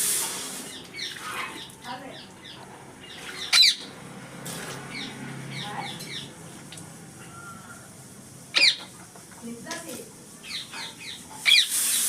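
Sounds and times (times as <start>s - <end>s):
parakeet chirping: 1.0s - 3.9s, 4.9s - 6.4s, 8.5s - 9.0s, 10.4s - 12.0s
parakeet harsh screech: 11.4s - 12.0s.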